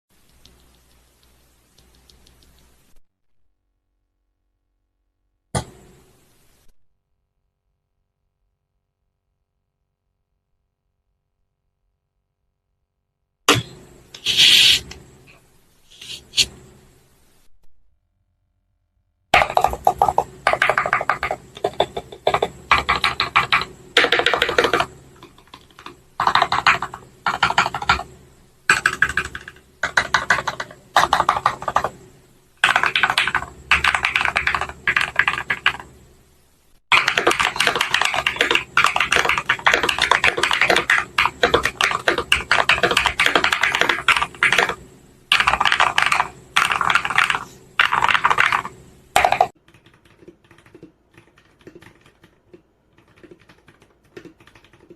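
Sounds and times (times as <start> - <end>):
mechanical keyboard typing: 19.4 - 28.1, 28.7 - 32.0, 32.6 - 35.9, 36.9 - 54.9.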